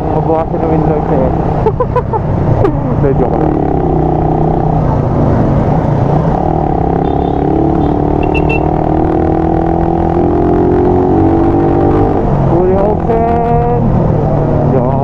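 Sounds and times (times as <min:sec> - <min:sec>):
wind rumble: 0:00.0 - 0:07.8.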